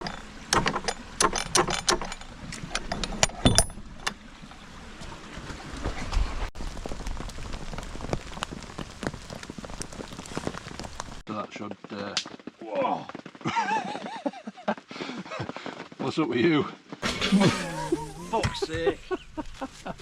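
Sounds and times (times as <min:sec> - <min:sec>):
rain pattering: 0:04.0 - 0:17.0, 0:17.6 - 0:20.0.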